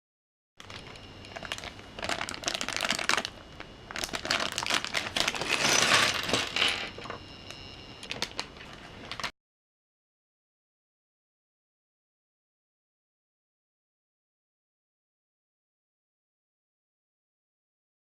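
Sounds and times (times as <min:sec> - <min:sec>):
plastic pieces rattling and clicking: 0:03.9 - 0:07.1
rustling: 0:03.9 - 0:07.2.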